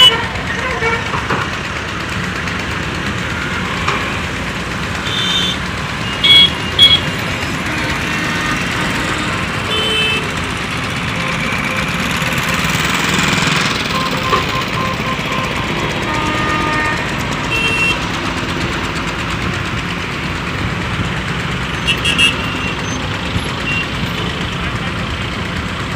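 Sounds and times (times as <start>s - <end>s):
horn toots: 0.0s - 1.2s, 5.0s - 18.1s, 21.7s - 23.0s
excavator diesel engine running: 0.0s - 25.9s.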